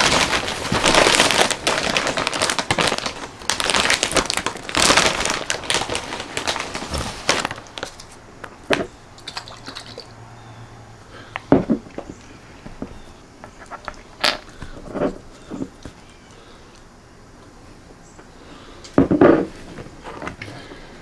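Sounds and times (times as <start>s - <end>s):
crunchy food being chewed: 11.2s - 17.5s.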